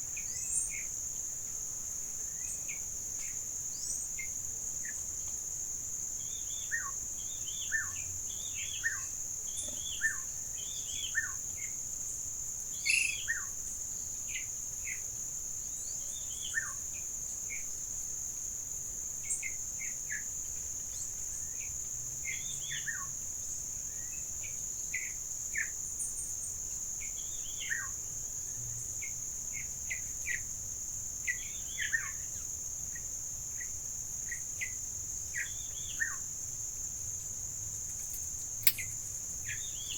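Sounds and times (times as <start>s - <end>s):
wild birds chirping: 12.8s - 13.4s, 37.9s - 39.9s.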